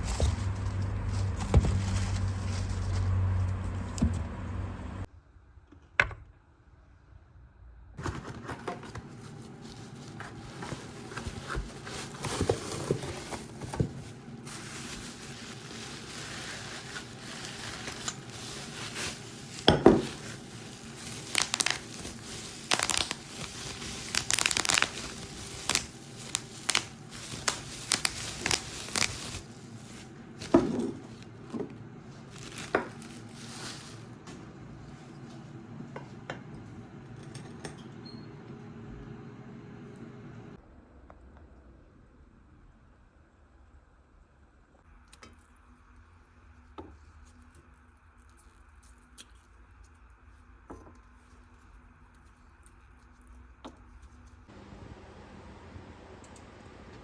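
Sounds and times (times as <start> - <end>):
packaging crinkling: 9.4 - 31.2, 32.2 - 34.1.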